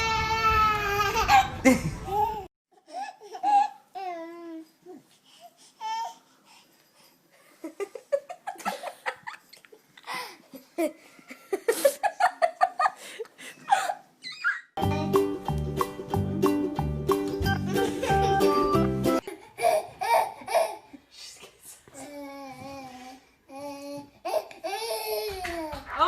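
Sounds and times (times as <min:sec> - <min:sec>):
baby laughing: 0:17.6 - 0:21.0.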